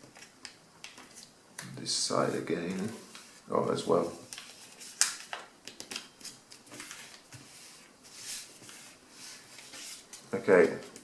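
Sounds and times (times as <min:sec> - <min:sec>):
paper being folded: 0:02.3 - 0:11.0.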